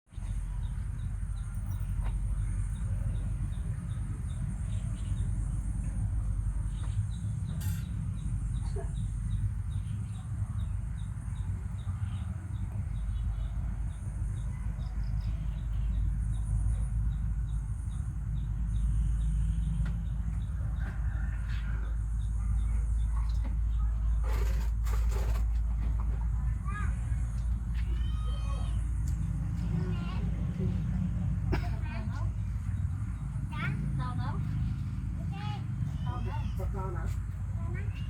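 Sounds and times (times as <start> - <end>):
steady low rumble: 0.1 - 24.2.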